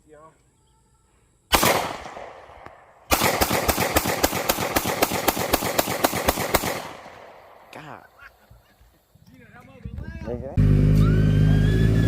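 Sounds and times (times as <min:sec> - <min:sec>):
rapid string of gunshots: 0:01.5 - 0:02.5, 0:03.1 - 0:07.7
single gunshot with echo: 0:01.5 - 0:07.7.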